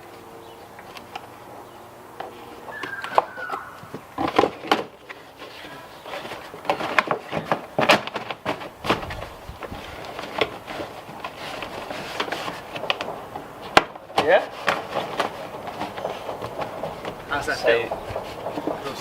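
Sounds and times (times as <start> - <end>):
short falling squeak: 2.7 - 3.9
hands knocking and scraping: 2.7 - 19.0.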